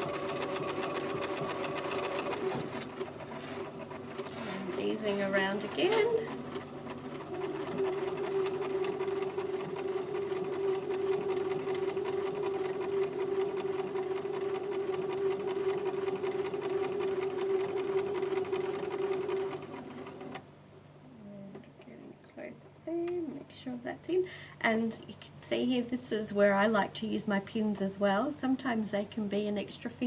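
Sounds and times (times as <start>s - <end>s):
sewing machine running: 0.0s - 20.4s.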